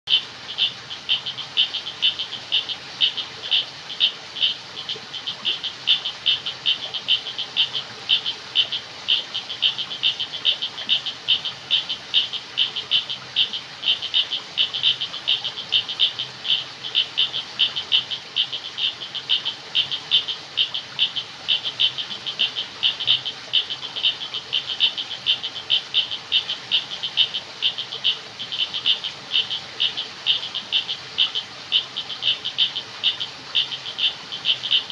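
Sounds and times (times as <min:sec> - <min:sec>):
faint background hiss: 0:00.1 - 0:34.9
frogs calling: 0:00.1 - 0:34.9.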